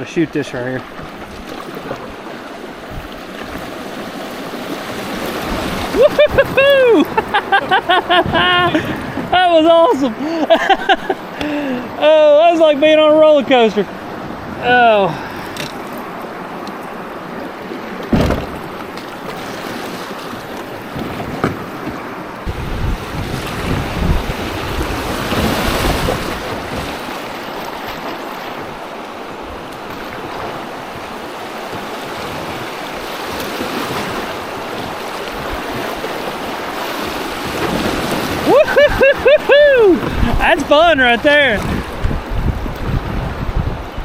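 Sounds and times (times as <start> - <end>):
river water rushing: 0.0 - 44.0
wind buffeting microphone: 4.5 - 9.4, 20.4 - 27.2, 37.1 - 44.0
knock against boat: 18.0 - 19.1, 20.9 - 22.0.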